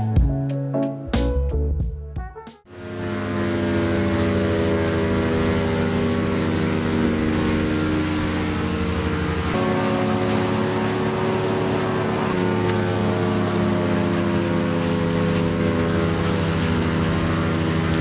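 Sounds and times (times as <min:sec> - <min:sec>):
large engine droning: 0:02.7 - 0:18.0.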